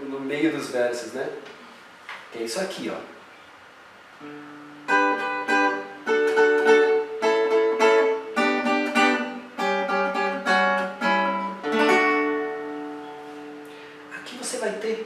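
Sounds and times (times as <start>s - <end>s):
acoustic guitar plucking notes: 4.2s - 15.0s.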